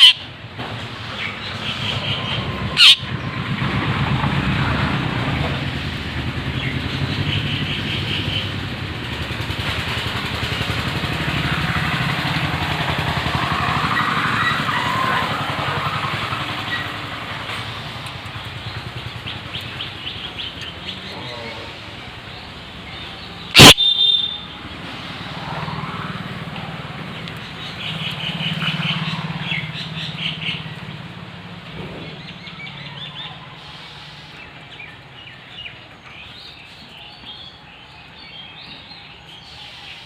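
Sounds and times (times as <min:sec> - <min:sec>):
vehicle engine running: 0:00.2 - 0:23.8
rapid high bird chirps: 0:01.4 - 0:03.1, 0:23.5 - 0:24.5.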